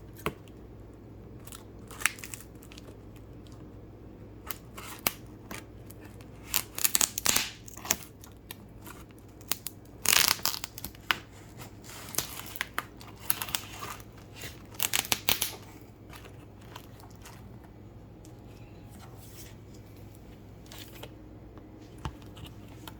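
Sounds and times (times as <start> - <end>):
packaging crinkling and tearing: 1.4 - 3.6, 4.5 - 17.7.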